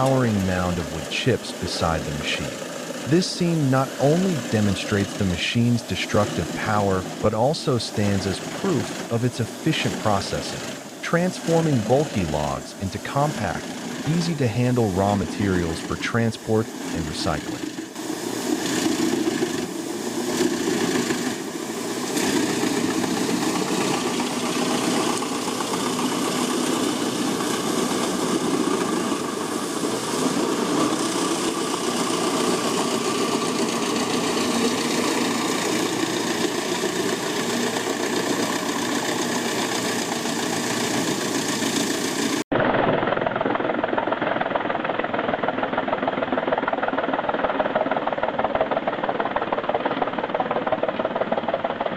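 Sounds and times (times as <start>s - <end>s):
machinery pulsing: 0.0s - 42.4s
wood chipper shredding logs: 0.0s - 46.5s.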